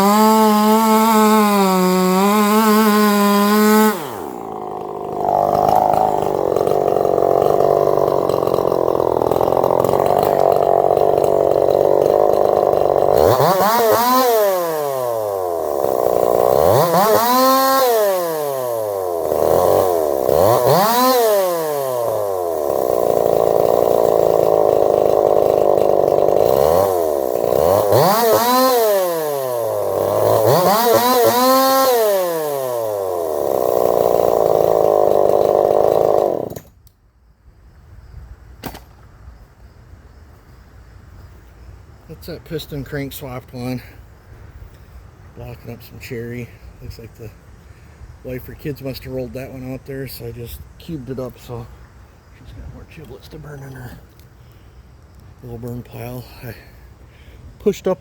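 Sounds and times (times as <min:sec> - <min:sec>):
chainsaw revving: 0:00.0 - 0:36.8
chainsaw cutting wood: 0:00.0 - 0:37.0, 0:38.6 - 0:39.0.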